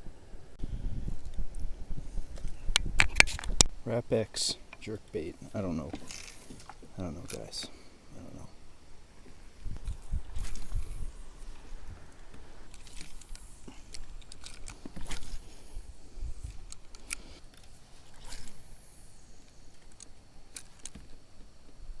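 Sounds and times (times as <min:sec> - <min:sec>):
fishing reel clicks and knocks: 0:02.4 - 0:03.7, 0:12.2 - 0:21.1.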